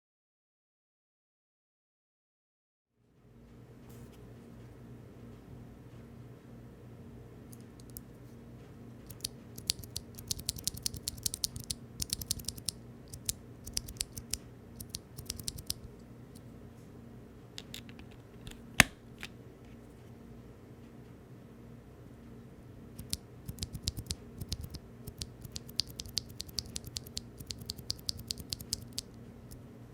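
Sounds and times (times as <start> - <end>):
mechanical keyboard key clacks: 9.1 - 15.8, 23.0 - 29.0.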